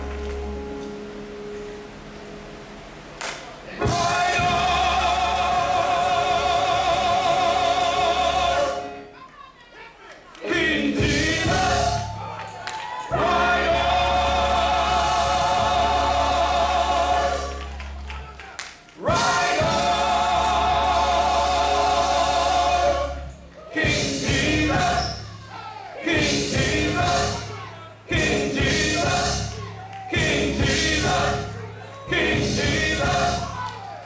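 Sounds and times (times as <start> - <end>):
low instrumental backing: 0.0 - 5.5
gospel choir singing: 0.0 - 34.0.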